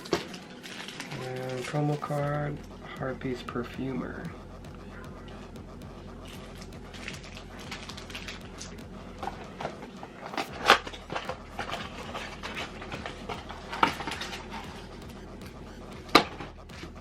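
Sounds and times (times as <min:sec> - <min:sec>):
rustling of card packaging: 0:00.0 - 0:02.3.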